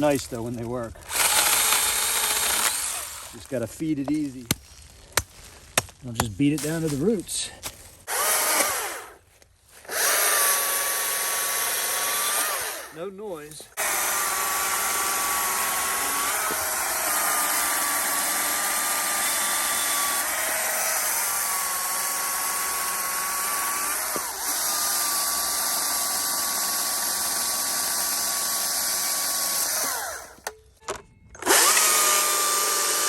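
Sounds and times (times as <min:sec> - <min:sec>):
power saw whining through wood: 0:01.0 - 0:03.5, 0:08.0 - 0:13.1, 0:13.8 - 0:30.5, 0:31.4 - 0:33.0.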